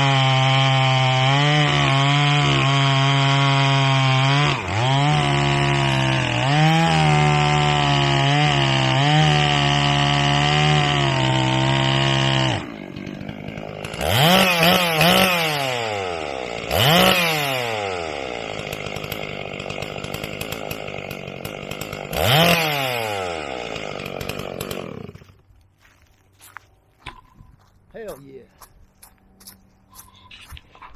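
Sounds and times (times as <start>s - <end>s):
chainsaw revving and idling: 0.0s - 25.5s.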